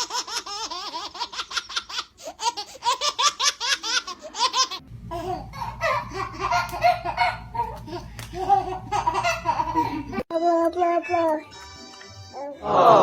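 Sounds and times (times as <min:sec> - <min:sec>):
high-pitched laughter: 0:02.4 - 0:10.2
steady low hum: 0:04.8 - 0:10.2
low laughing or vocalising: 0:05.1 - 0:10.2.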